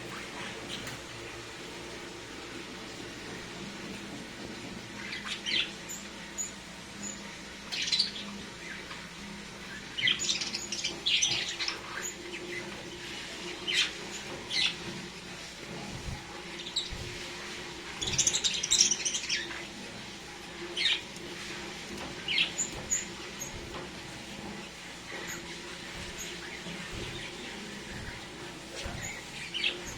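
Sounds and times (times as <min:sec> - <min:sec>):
steady low hum: 0:00.0 - 0:29.9
lovebirds chirping: 0:15.9 - 0:19.7, 0:22.1 - 0:29.9.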